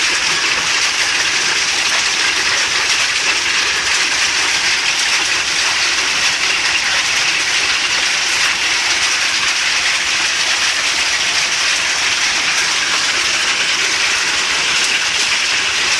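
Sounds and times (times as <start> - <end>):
hail and heavy rain pelting: 0.0 - 15.9.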